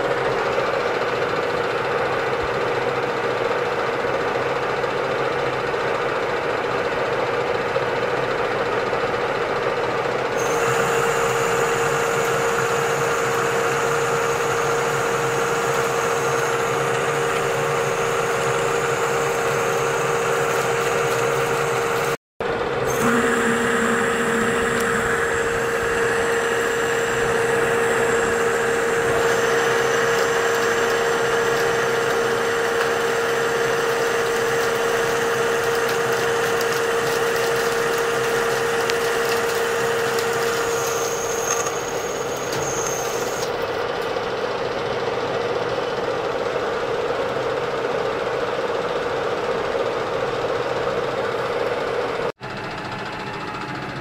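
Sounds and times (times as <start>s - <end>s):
metal-turning lathe humming: 8.1s - 45.0s
machining noise: 10.4s - 44.0s.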